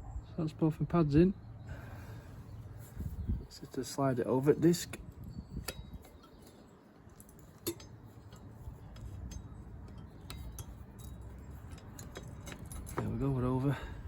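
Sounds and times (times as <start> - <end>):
light metallic clinks: 4.4 - 14.0.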